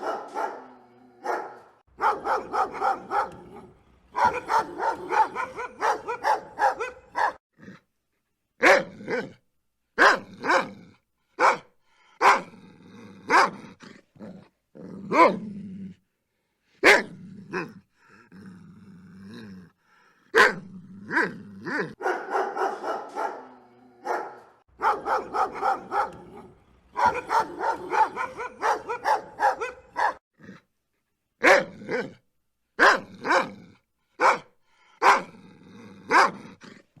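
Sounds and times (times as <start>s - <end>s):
dog barking: 0.0s - 7.4s, 8.6s - 9.3s, 10.0s - 10.8s, 11.4s - 12.6s, 13.3s - 13.7s, 15.1s - 15.4s, 16.8s - 17.7s, 20.3s - 30.2s, 31.4s - 32.2s, 32.8s - 33.6s, 34.2s - 35.4s, 36.1s - 36.5s.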